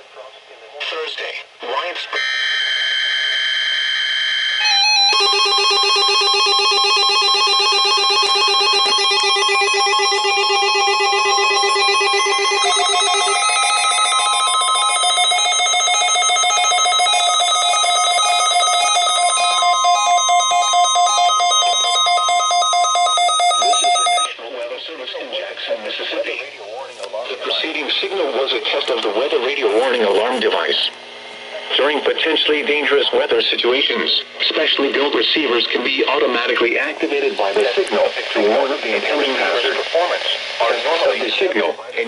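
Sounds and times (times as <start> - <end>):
steady alarm tone: 2.2 - 24.3
warbling electronic alarm: 2.2 - 24.3.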